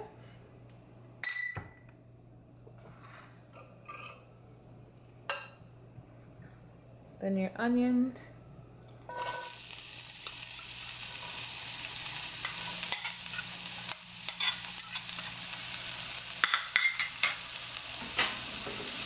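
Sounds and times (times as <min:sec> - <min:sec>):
onions sizzling in oil: 0:09.1 - 0:19.0
utensil scraping a pan: 0:12.2 - 0:15.4.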